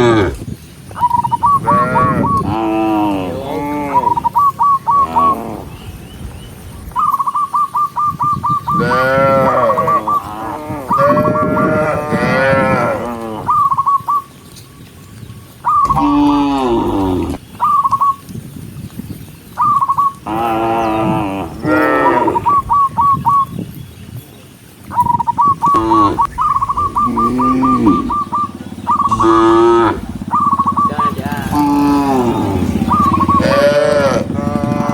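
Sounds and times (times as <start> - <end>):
cattle mooing: 0.0 - 0.4, 1.6 - 5.7, 8.7 - 13.6, 15.8 - 17.4, 20.3 - 22.5, 25.6 - 28.4, 29.0 - 30.2, 31.1 - 34.9.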